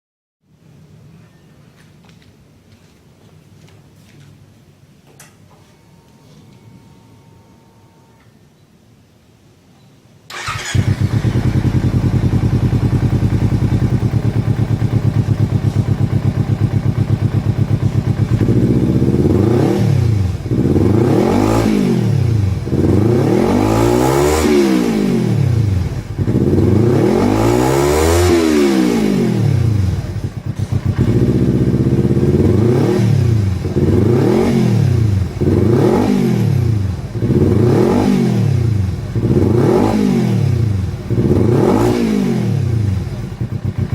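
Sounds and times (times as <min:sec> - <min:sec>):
motorcycle engine idling and revving: 0:10.3 - 0:43.9
motorcycle engine starting: 0:10.3 - 0:43.9.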